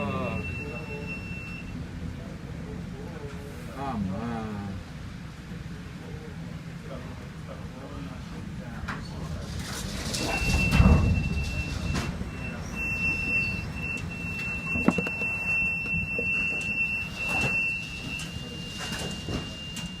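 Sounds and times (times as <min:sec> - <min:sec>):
thin high whistle: 0:10.2 - 0:20.0.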